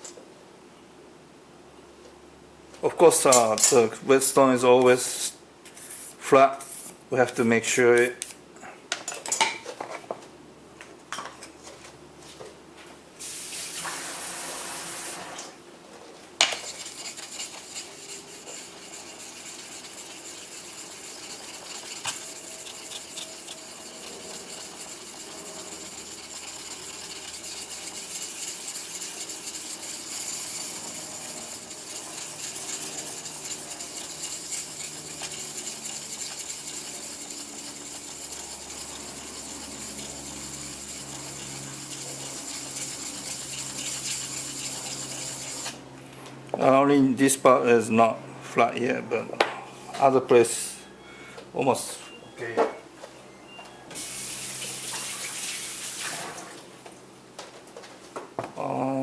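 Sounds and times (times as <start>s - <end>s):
knife scraping on whetstone: 16.4s - 45.8s.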